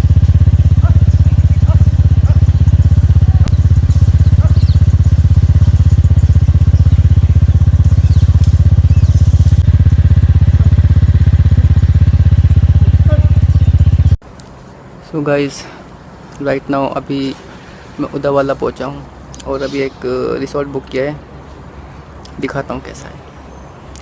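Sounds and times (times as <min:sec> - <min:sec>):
motorcycle engine rumbling: 0:00.0 - 0:24.0.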